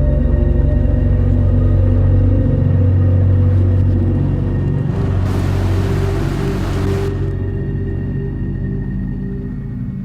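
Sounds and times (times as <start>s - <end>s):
low droning music: 0.0s - 10.0s
hissing rush: 4.9s - 7.4s.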